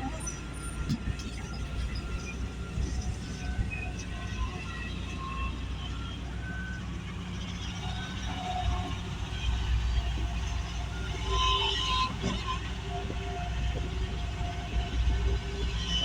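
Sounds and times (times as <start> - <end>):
diesel machinery engine drone: 0.0 - 16.0.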